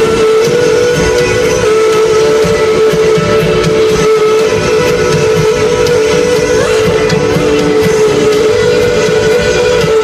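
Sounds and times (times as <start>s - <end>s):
live rock band playing: 0.0s - 10.0s
long held note: 0.0s - 10.0s.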